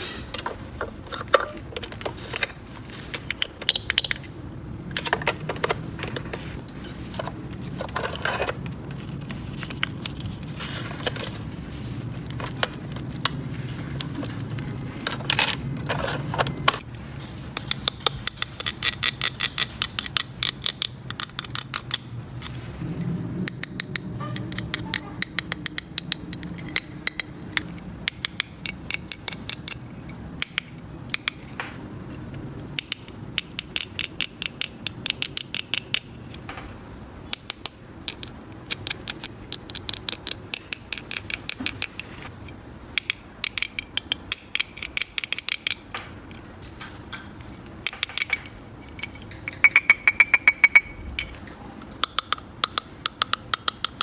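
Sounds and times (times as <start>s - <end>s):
plastic toy pieces clicking: 17.6s - 22.1s, 23.4s - 31.5s, 32.8s - 36.1s, 37.3s - 42.1s, 42.9s - 46.4s, 47.8s - 51.3s, 51.9s - 54.0s.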